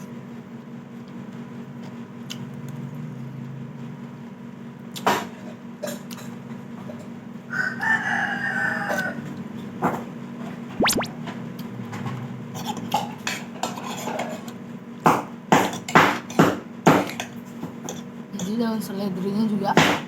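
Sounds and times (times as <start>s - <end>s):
rooster crowing: 7.5s - 9.4s.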